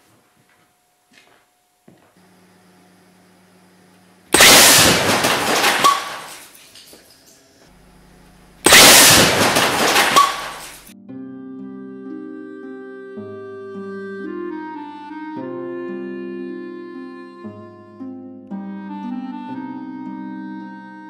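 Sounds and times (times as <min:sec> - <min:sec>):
faint steady hum: 0:00.0 - 0:11.0
loud blast and crash: 0:04.4 - 0:06.3, 0:08.7 - 0:10.9
sharp bang: 0:08.7 - 0:10.8
music: 0:10.9 - 0:21.0.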